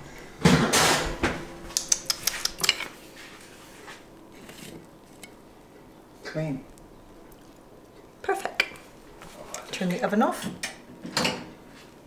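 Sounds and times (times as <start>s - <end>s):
utensils clinking and tapping: 1.8s - 2.9s.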